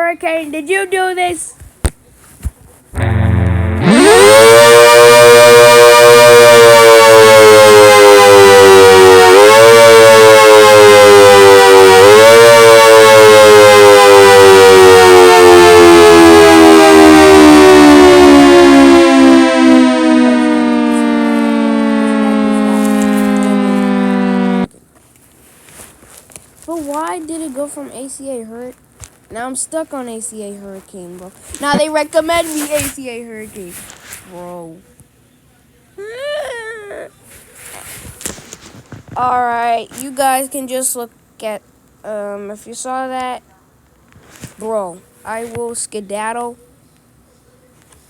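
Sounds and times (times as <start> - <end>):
outdoor warning siren wailing: 3.0 - 24.8.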